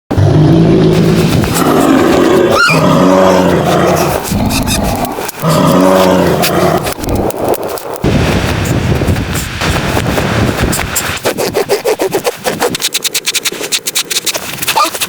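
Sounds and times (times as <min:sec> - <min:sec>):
cow mooing: 0:00.3 - 0:06.8.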